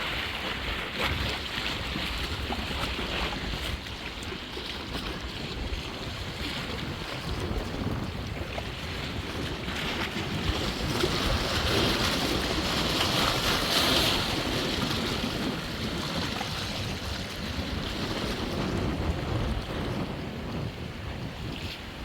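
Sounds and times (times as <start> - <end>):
waves splashing against bank: 0.0 - 22.0
wind buffeting microphone: 0.0 - 22.0.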